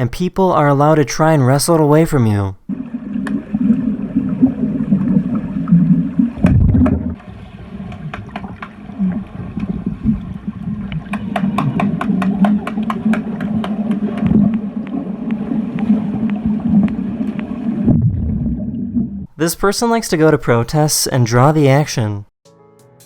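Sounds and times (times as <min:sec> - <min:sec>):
underwater churning and bubbling: 0:02.7 - 0:19.4.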